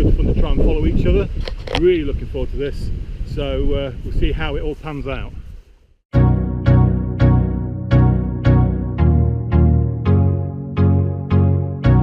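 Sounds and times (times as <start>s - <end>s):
synthesizer chords on a beat: 6.1s - 12.0s.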